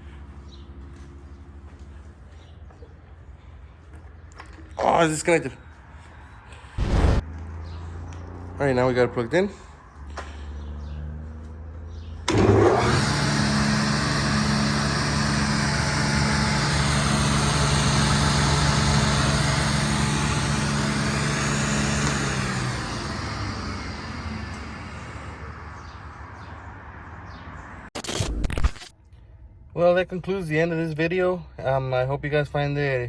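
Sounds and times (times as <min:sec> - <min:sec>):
table saw motor running: 0:12.3 - 0:25.7.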